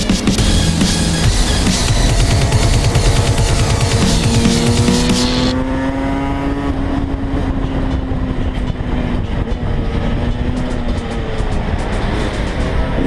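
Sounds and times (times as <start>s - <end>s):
two-stroke engine revving high: 0.0s - 8.8s.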